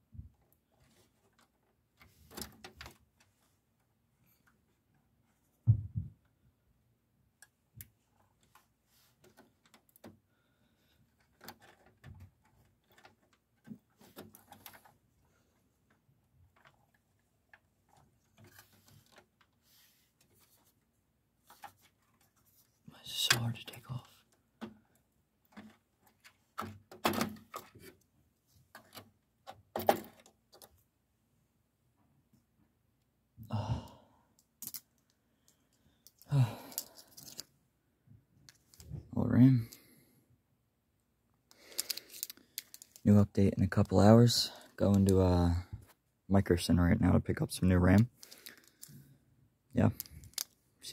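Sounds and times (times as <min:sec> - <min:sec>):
clicks of computer parts handled: 0:25.5 - 0:28.0, 0:34.6 - 0:35.1.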